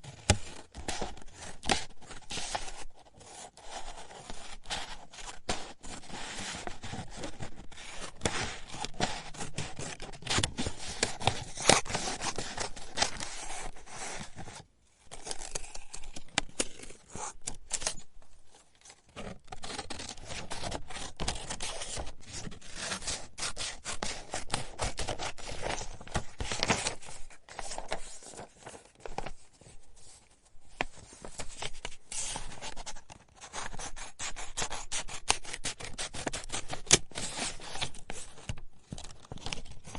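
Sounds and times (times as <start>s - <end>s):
scissors cutting paper: 33.5s - 38.0s.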